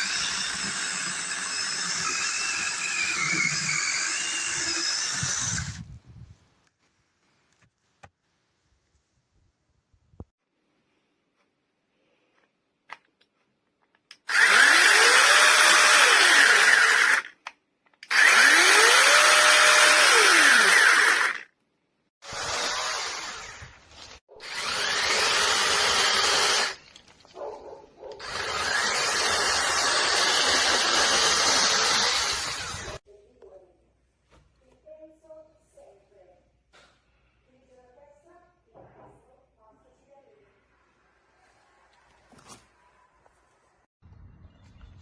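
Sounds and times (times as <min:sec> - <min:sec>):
mini chainsaw motor whining: 0:00.0 - 0:05.8, 0:14.2 - 0:17.3, 0:18.0 - 0:21.5, 0:24.4 - 0:26.8, 0:28.2 - 0:33.0.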